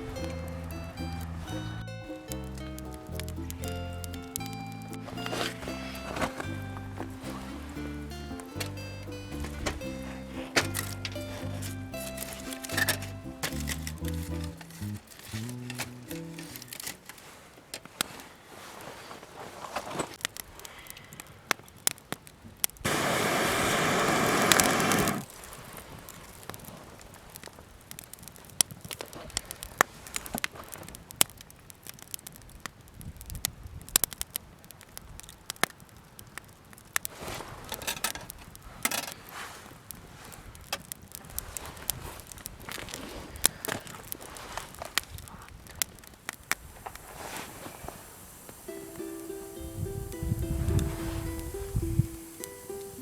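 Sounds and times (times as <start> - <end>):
campfire crackling and popping: 0.0 - 18.9, 19.7 - 53.0
loud hiss: 22.8 - 25.3, 46.6 - 53.0.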